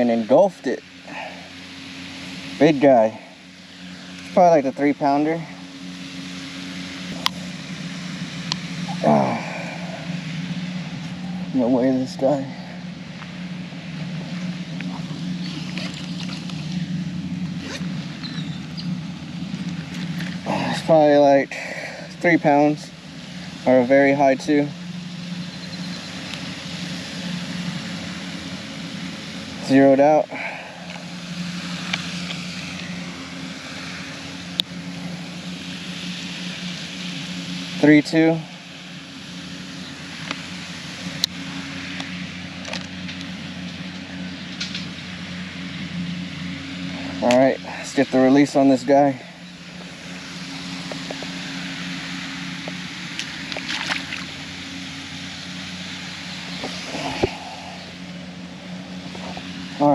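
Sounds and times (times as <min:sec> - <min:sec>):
constant low hum: 0:00.0 - 0:59.9
rushing haze: 0:00.0 - 0:59.9
water splash: 0:53.2 - 0:54.3.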